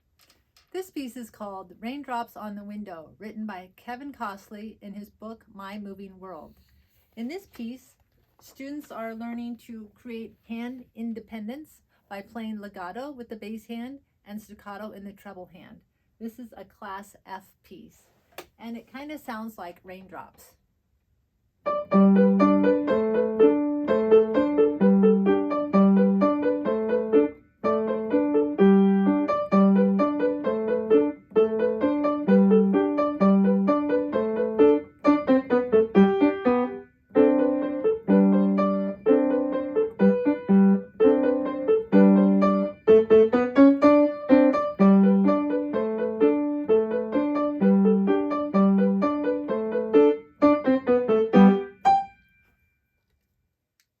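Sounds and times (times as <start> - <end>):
piano piece: 21.6 - 52.4.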